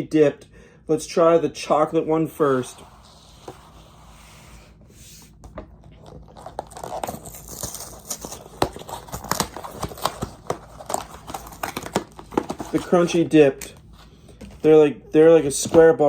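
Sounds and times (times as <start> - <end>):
plastic wrapper crinkling: 5.8 - 13.8.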